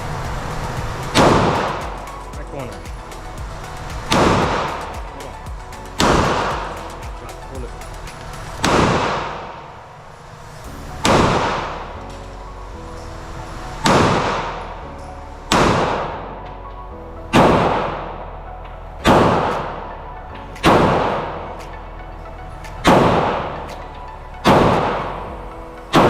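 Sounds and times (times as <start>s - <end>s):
pistol shots with echo: 1.2s - 1.8s, 8.6s - 9.6s, 15.5s - 16.2s, 17.3s - 18.2s.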